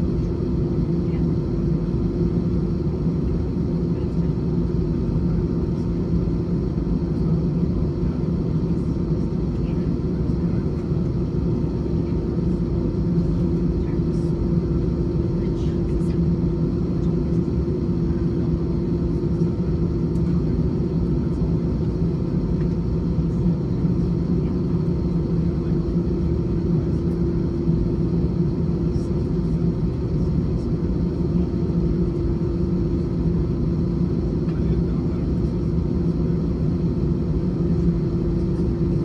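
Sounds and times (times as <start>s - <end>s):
jet engine low rumble: 0.0s - 39.0s.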